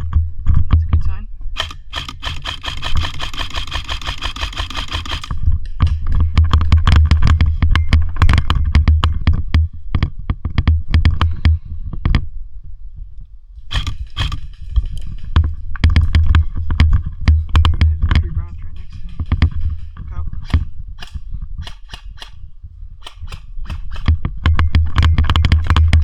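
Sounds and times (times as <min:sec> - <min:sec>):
gear rattling: 0:01.6 - 0:06.0, 0:13.7 - 0:17.6, 0:18.2 - 0:26.0.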